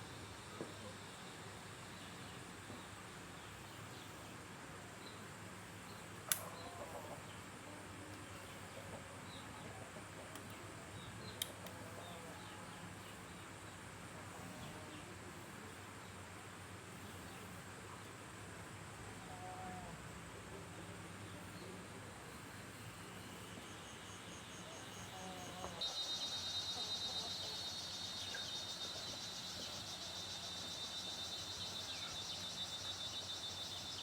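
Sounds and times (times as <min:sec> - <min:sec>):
background hiss: 0:00.0 - 0:34.0
faint high chirps: 0:21.3 - 0:34.0.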